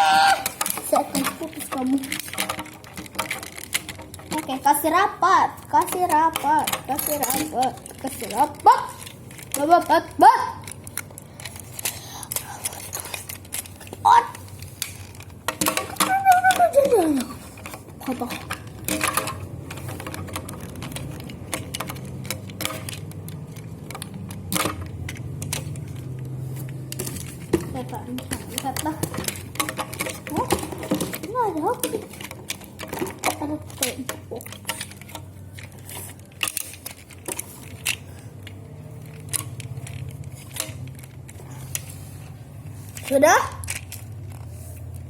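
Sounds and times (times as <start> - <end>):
plastic toy clicking and snapping: 0.0 - 45.0.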